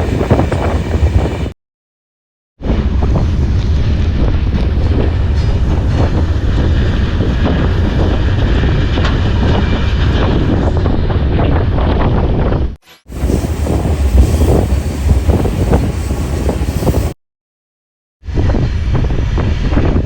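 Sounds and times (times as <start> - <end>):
wind buffeting microphone: 0.0 - 1.6, 2.6 - 17.2, 18.2 - 20.0
freight train wagons rattling: 13.1 - 17.2.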